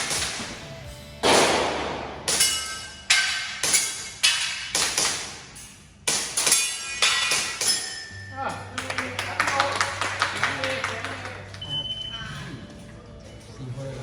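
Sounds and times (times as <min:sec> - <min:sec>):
airsoft pistol shots: 0:01.2 - 0:02.7.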